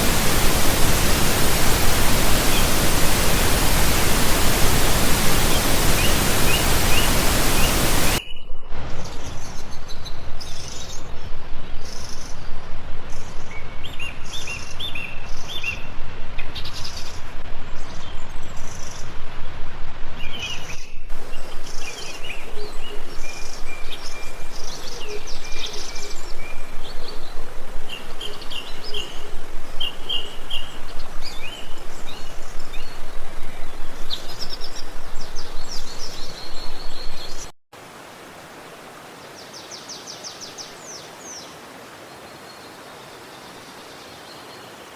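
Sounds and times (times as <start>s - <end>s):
flowing water rushing: 0.0s - 8.2s, 21.1s - 44.9s
small birds chirping: 0.0s - 8.4s, 21.1s - 37.5s.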